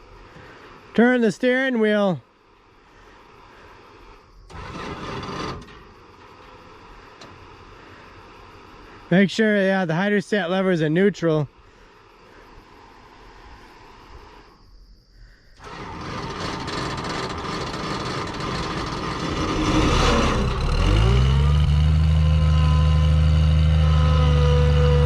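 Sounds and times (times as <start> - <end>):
engine idling: 3.1 - 9.1, 15.6 - 25.0
starter motor grinding: 4.5 - 7.4, 15.6 - 25.0.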